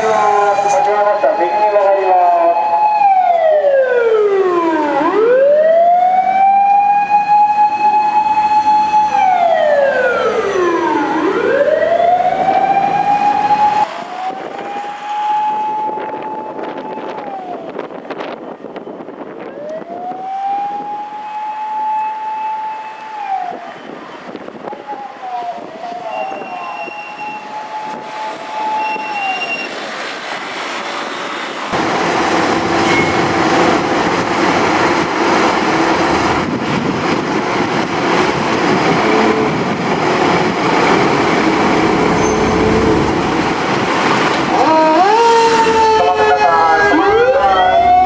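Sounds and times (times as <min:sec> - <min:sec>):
motor siren wailing: 0:00.0 - 0:18.4, 0:19.4 - 0:29.5, 0:39.3 - 0:48.0.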